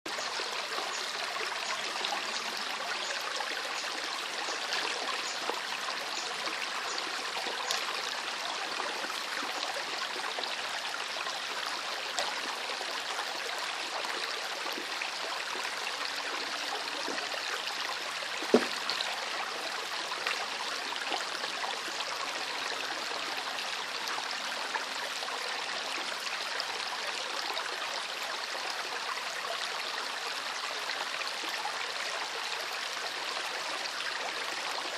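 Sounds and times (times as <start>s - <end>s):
river water flowing: 0.1s - 34.9s.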